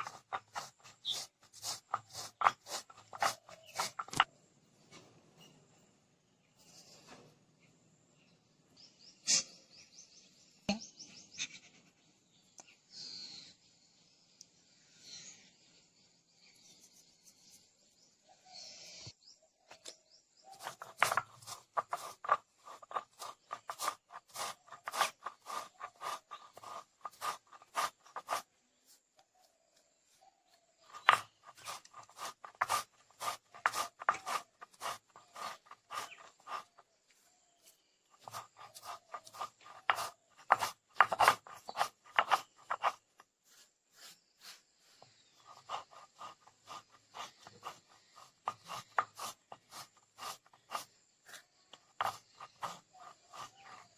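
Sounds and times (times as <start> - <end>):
food preparation knocking and scraping: 0.0 - 4.3, 20.5 - 28.5, 30.8 - 36.8, 38.2 - 53.9.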